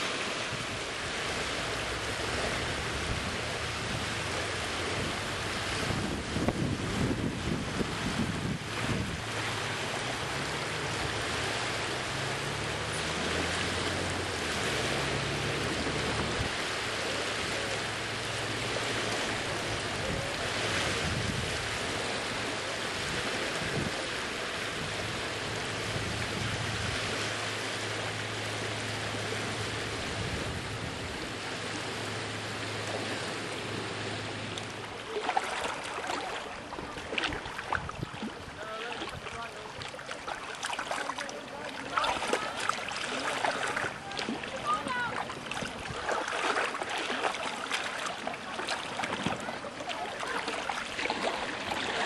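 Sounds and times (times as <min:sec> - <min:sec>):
wind on microphone: 0:00.0 - 0:16.8, 0:17.5 - 0:39.9, 0:43.4 - 0:47.5
low motor hum: 0:00.0 - 0:22.7, 0:23.8 - 0:52.0
water rushing and splashing: 0:00.0 - 0:52.0.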